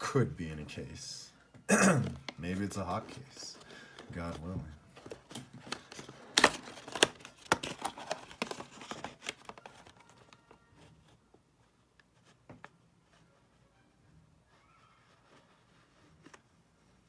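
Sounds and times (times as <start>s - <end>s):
packaging tearing and crinkling: 5.0s - 10.3s.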